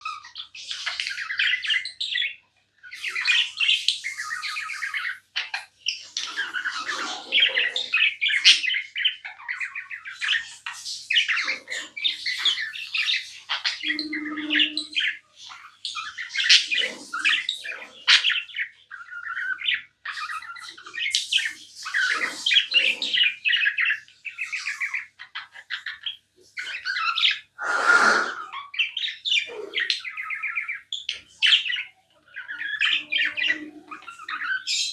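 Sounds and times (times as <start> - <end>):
budgerigars chirping and chattering: 0.0 - 34.9.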